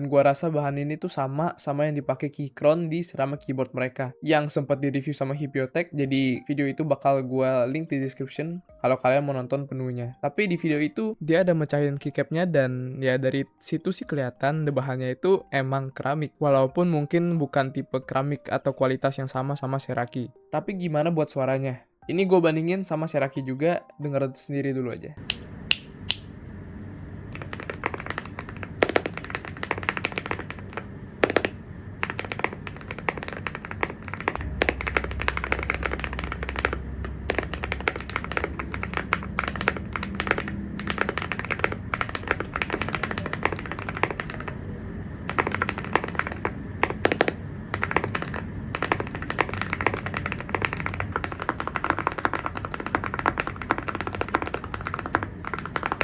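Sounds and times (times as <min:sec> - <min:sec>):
mechanical keyboard typing: 0:27.3 - 0:44.6, 0:45.2 - 0:56.0.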